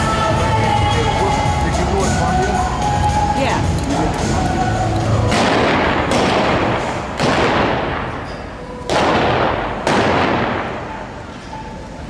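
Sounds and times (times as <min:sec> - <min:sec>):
gunshots with echoing tail: 0:05.2 - 0:11.2.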